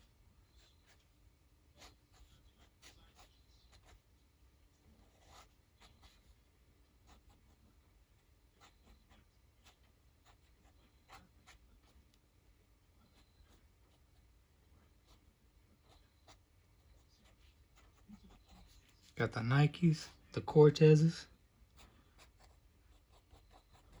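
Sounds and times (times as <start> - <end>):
pen scratching on paper: 1.8 - 4.1, 5.0 - 6.4, 7.0 - 7.6, 8.6 - 12.0, 14.9 - 19.2, 21.7 - 24.0.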